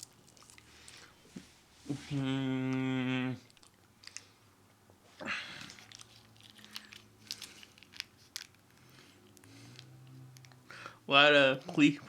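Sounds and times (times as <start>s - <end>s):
person crunching fried chicken: 0.0s - 1.1s, 5.6s - 9.8s.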